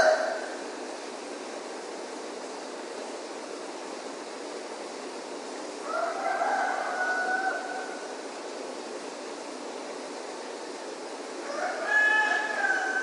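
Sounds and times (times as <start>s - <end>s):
rooster crowing: 0.0s - 0.6s, 5.8s - 8.1s, 11.4s - 13.0s
steady background noise: 0.0s - 13.0s.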